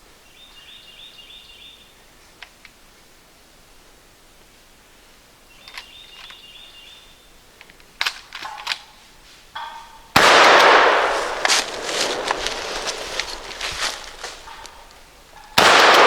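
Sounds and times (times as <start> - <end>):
shotgun firing: 10.1 - 15.0, 15.6 - 16.0.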